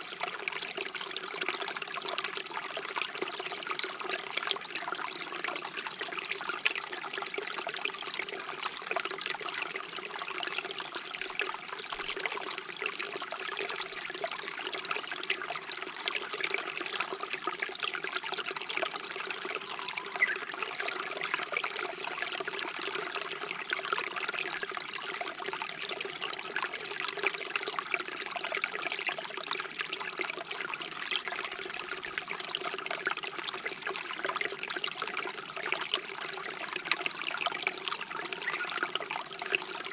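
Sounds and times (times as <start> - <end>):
stream babbling: 17.8 - 24.3, 36.4 - 39.9.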